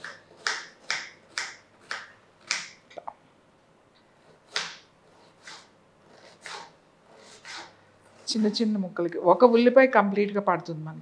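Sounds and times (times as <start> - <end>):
knife chopping onion: 0.0 - 2.8, 4.2 - 7.8.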